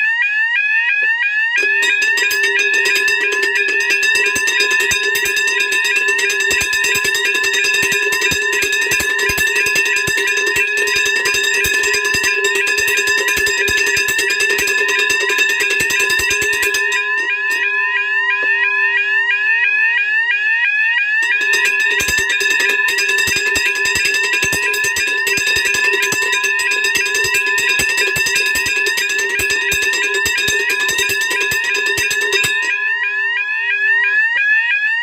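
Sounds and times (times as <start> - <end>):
sweeping electronic alarm tones: 0.0 - 35.0
rapid clicking clatter: 21.2 - 32.8.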